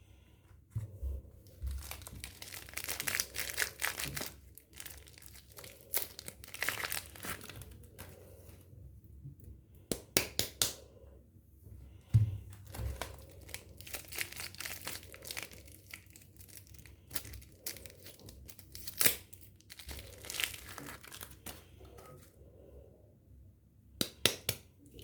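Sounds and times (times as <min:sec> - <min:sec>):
wrapper crinkling and tearing: 0:01.4 - 0:08.2, 0:12.5 - 0:21.9.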